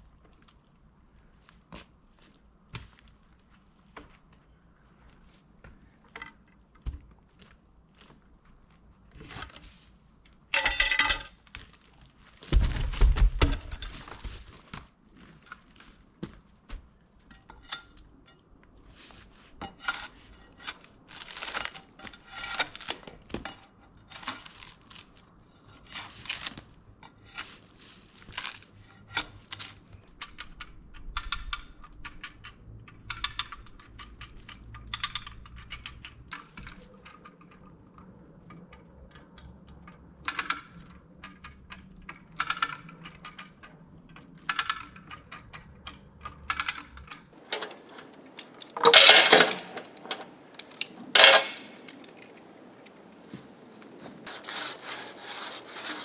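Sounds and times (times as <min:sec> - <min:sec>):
tools scraping rocky soil: 0:18.9 - 0:23.3, 0:47.4 - 0:56.0.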